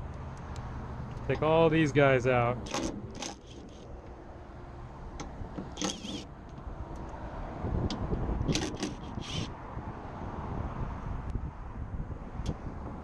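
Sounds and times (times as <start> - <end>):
passing traffic rumble: 0.0 - 13.0
metallic clicks and scrapes of bolts: 2.6 - 4.2, 5.2 - 7.2, 8.5 - 9.5.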